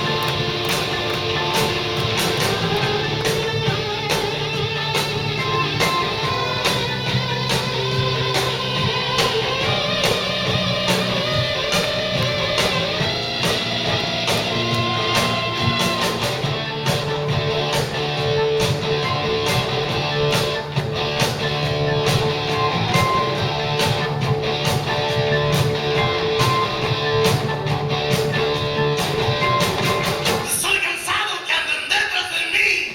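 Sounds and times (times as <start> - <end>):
bass guitar: 0.0 - 30.5
steady drum beat: 0.0 - 30.6
wavering electric guitar lead: 0.0 - 30.7.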